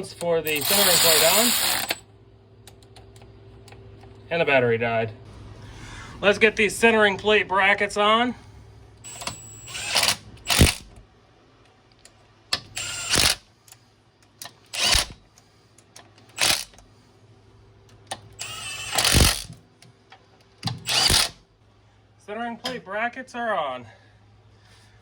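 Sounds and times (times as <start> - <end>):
power tool driving bolts: 0.5 - 2.0, 9.1 - 10.9, 12.6 - 13.4, 14.7 - 15.2, 16.3 - 16.8, 18.1 - 19.6, 20.6 - 21.4.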